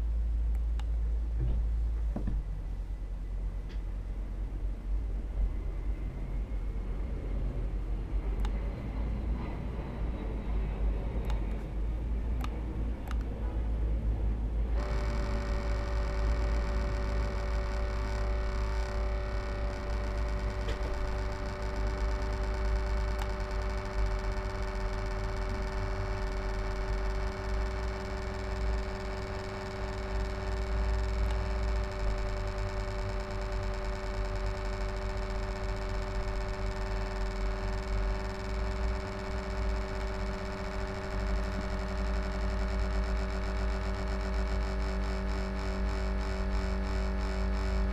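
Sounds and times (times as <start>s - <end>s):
laptop cooling fan humming: 0.0s - 47.9s
two-note whine: 14.7s - 47.9s.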